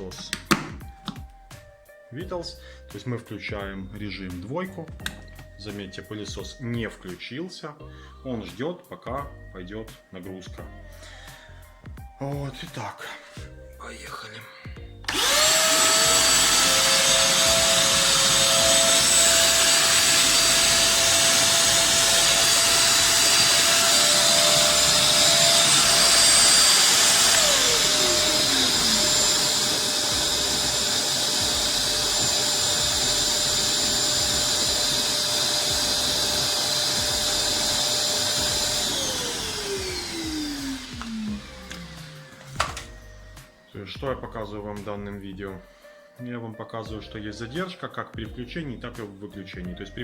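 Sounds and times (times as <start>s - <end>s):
construction vacuum running: 15.1s - 43.4s
vacuum cleaner motor whining: 15.1s - 43.5s.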